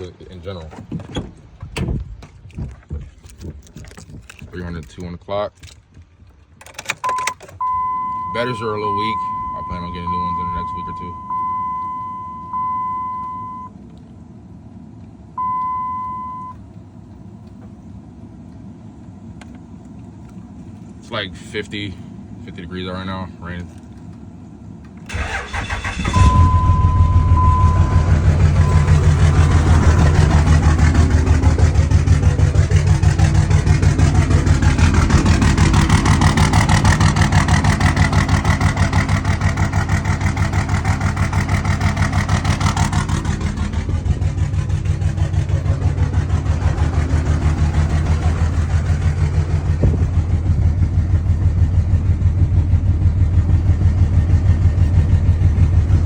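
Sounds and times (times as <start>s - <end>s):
short steady tone: 7.1s - 13.8s, 15.4s - 16.6s, 26.0s - 30.6s
diesel engine idling: 7.1s - 56.0s.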